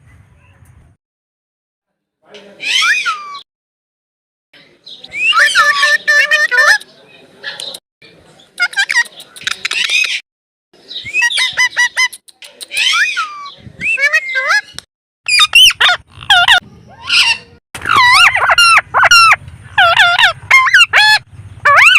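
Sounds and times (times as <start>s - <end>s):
parakeet squawking: 2.6s - 3.4s, 5.2s - 6.8s, 12.8s - 21.9s.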